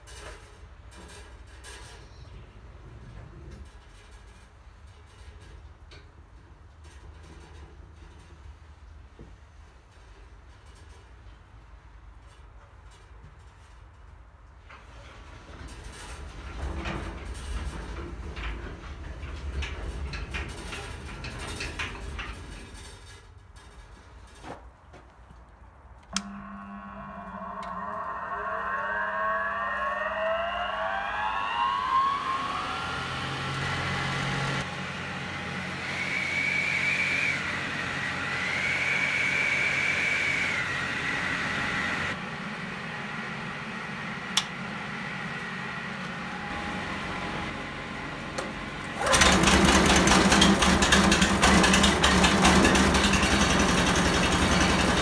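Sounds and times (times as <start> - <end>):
motor whining: 26.1 - 34.7
loud engine running: 26.1 - 55.0.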